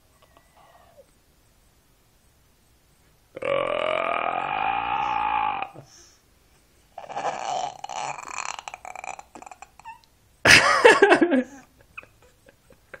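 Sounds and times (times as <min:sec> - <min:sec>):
baby throat noise: 0:07.0 - 0:10.0
baby squealing: 0:09.6 - 0:10.1.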